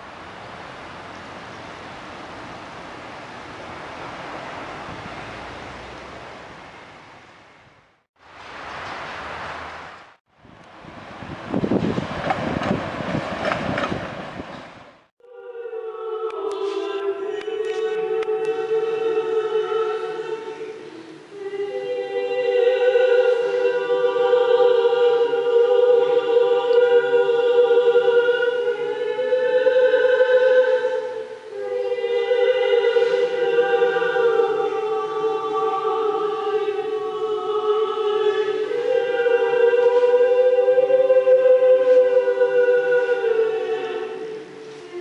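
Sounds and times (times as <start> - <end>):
choir singing held chords: 15.2 - 45.0.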